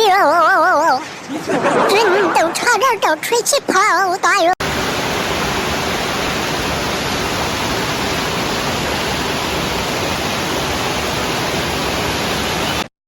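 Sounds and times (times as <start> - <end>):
heavy rain: 4.6 - 12.9.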